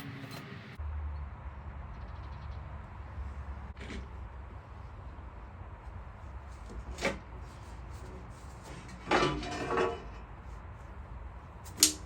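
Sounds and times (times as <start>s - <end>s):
low workshop hum: 3.1s - 12.0s.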